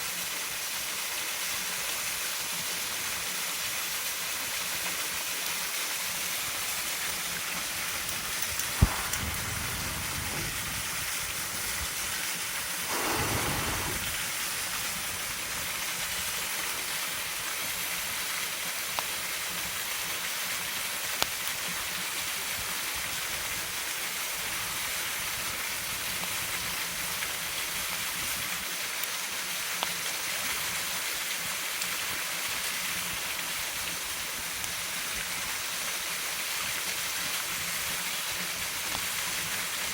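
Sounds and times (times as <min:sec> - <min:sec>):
sharp snap: 0:08.6 - 0:10.5
waterfall rushing: 0:08.6 - 0:15.1.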